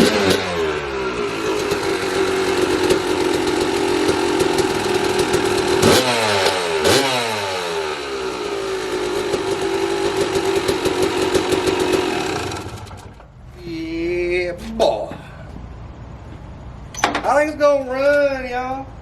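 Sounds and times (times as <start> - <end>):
two-stroke engine revving and idling: 0.0 - 13.3.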